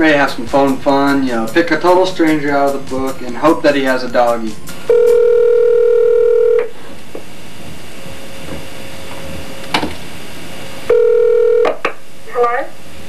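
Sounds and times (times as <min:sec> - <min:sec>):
phone line hiss: 0:04.6 - 0:07.0, 0:10.3 - 0:11.8
telephone ringback tone: 0:04.8 - 0:06.7, 0:10.9 - 0:11.8.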